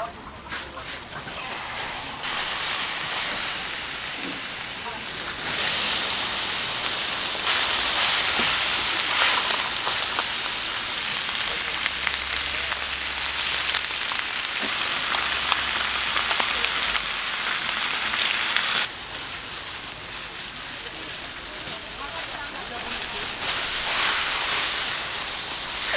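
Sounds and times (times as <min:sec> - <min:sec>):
meat sizzling on a griddle: 0:01.3 - 0:25.9.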